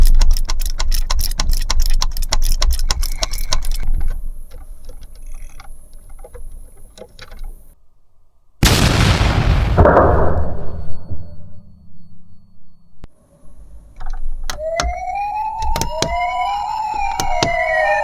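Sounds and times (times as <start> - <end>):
rapid regular ticking: 0.0 - 7.8, 13.6 - 18.0
low rumble: 8.6 - 14.5.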